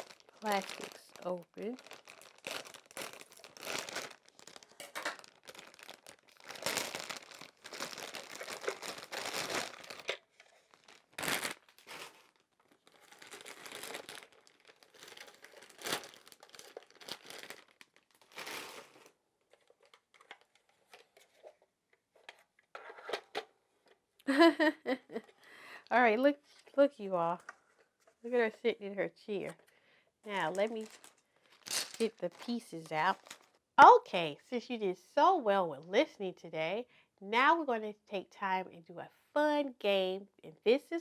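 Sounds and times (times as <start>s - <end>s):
plastic packaging crinkling: 0.0s - 21.5s, 30.3s - 33.6s.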